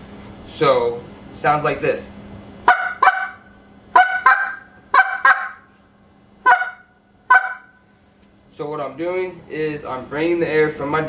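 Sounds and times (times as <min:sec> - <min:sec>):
goose call clucks: 0:02.7 - 0:03.4, 0:04.0 - 0:05.7, 0:06.5 - 0:07.8.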